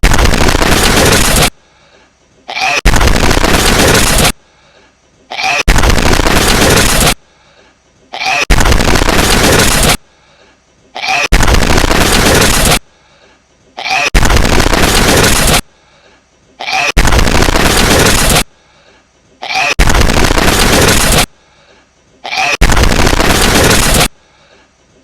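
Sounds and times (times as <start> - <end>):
distorted hedgehog sneeze: 2.5 - 4.3, 5.3 - 6.0, 16.6 - 17.1, 19.4 - 21.3, 22.3 - 24.1.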